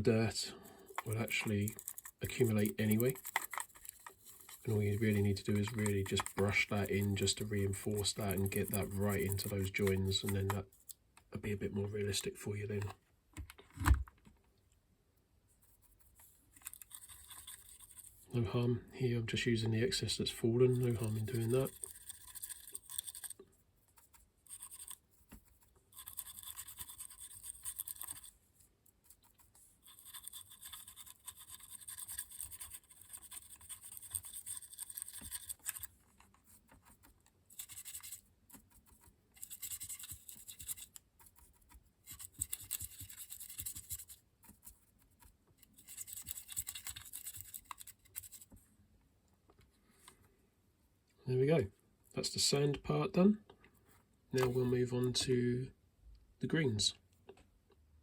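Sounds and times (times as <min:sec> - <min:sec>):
brush scratching dry powder: 0:00.0 - 0:11.0, 0:15.6 - 0:18.4, 0:19.6 - 0:48.5.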